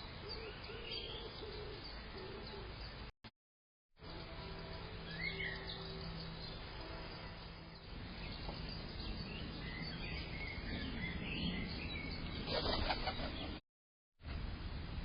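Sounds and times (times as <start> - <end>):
small birds chirping: 0.0 - 3.1, 4.0 - 13.6
steady low hiss: 4.0 - 13.3, 14.3 - 15.0
wing flapping: 12.4 - 13.6.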